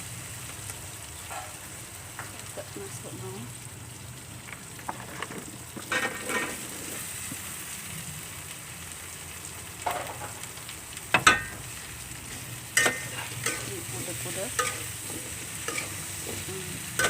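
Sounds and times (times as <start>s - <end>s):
food sizzling in hot oil: 0.0s - 17.0s
utensil scraping metal pan: 5.9s - 7.0s, 12.8s - 17.0s.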